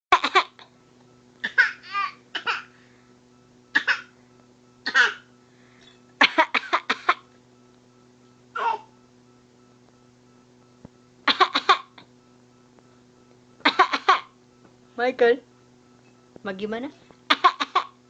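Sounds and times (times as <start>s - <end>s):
baby fake coughing: 0.1s - 0.7s, 1.4s - 2.8s, 3.7s - 4.1s, 4.8s - 5.3s, 6.2s - 7.3s, 8.5s - 8.9s, 11.3s - 12.0s, 13.6s - 14.4s, 17.3s - 18.0s
adult imitating coughs: 3.7s - 4.1s, 4.8s - 5.3s, 6.2s - 7.3s, 8.6s - 8.9s, 11.2s - 12.1s, 13.6s - 14.4s, 17.3s - 18.0s.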